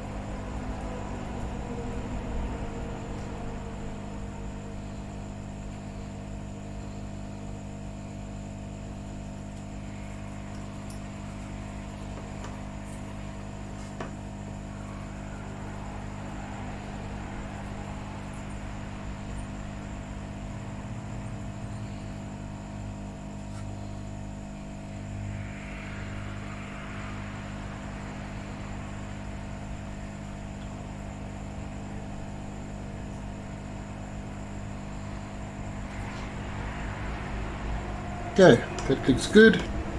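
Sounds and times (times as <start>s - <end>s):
electrical mains hum: 0.0s - 39.9s.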